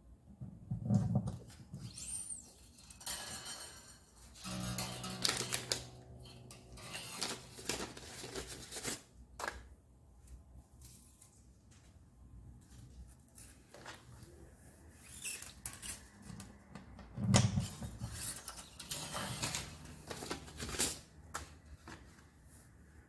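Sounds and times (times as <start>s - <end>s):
hands and tools clicking and scraping: 0.7s - 9.7s, 15.0s - 22.2s.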